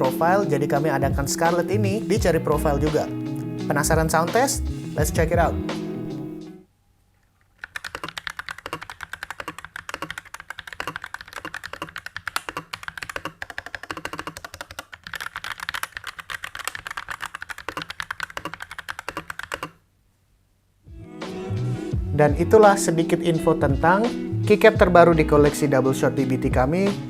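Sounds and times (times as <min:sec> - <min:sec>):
mechanical keyboard key clicks: 0:07.6 - 0:19.8.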